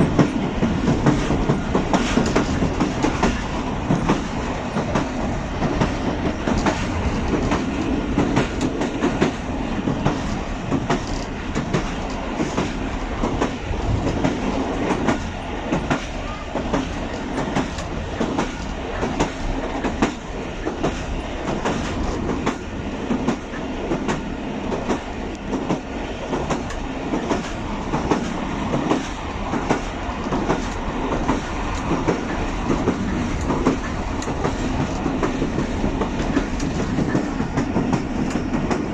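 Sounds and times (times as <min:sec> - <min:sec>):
train rumbling: 0:00.0 - 0:38.9.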